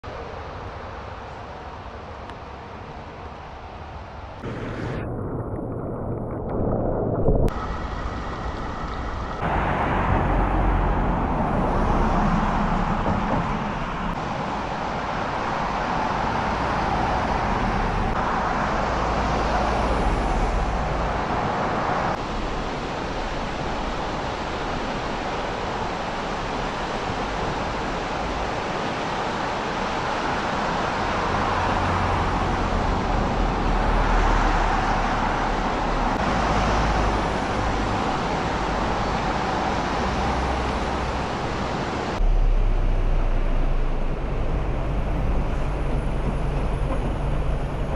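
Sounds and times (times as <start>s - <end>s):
traffic on wet roads: 0.1s - 5.0s, 7.5s - 47.9s
rain: 0.1s - 47.9s
low rumble: 4.3s - 14.2s, 42.2s - 47.9s.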